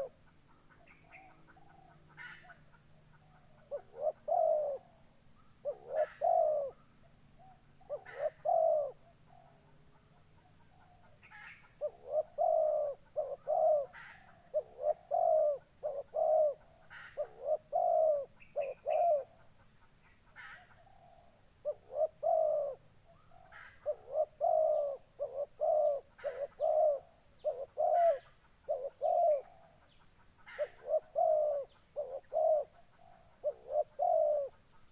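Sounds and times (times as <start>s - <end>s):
dove cooing: 0.0s - 19.6s, 20.3s - 29.8s, 30.4s - 34.9s
faint high-pitched whine: 0.0s - 34.9s.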